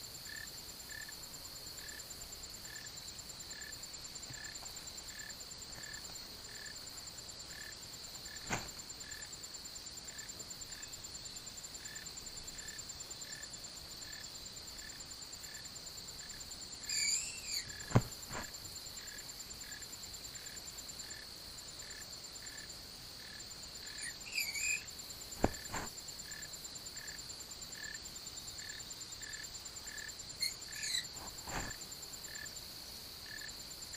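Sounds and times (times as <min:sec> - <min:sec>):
insects chirping: 0:00.0 - 0:33.9
skunk squeaking: 0:16.9 - 0:18.5, 0:23.9 - 0:25.9, 0:30.4 - 0:31.7.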